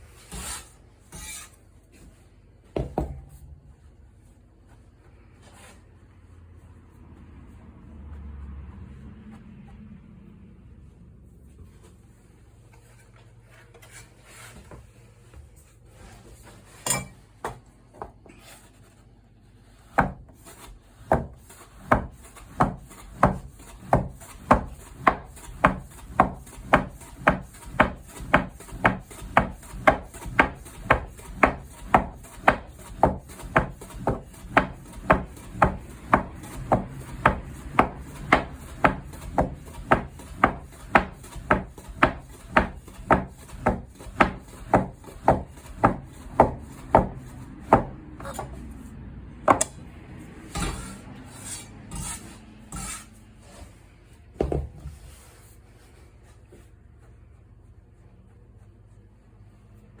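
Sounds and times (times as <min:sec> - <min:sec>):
knife chopping dough on wood: 0:19.7 - 0:48.7, 0:49.4 - 0:49.9.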